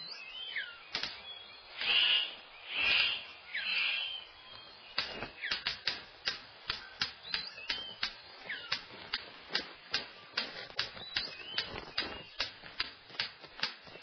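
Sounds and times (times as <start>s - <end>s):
short whistled bird calls: 0.0s - 5.6s, 6.8s - 8.8s
bird sharp clicks: 0.9s - 1.2s, 1.8s - 3.9s, 4.9s - 14.0s.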